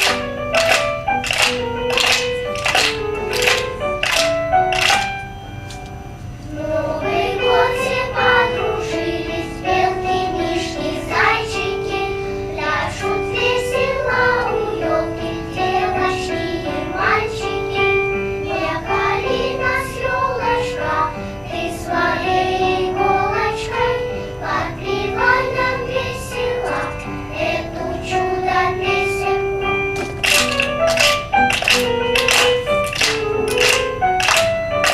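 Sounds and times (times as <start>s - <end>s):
children's choir singing: 0.0s - 5.2s, 6.5s - 34.9s
musical accompaniment: 0.0s - 11.0s, 29.8s - 34.9s.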